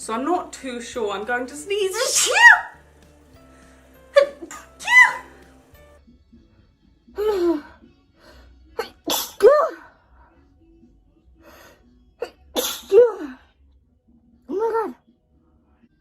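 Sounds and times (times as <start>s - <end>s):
woman sneezing: 1.9s - 2.8s, 4.1s - 5.3s, 8.8s - 9.9s, 12.2s - 13.4s.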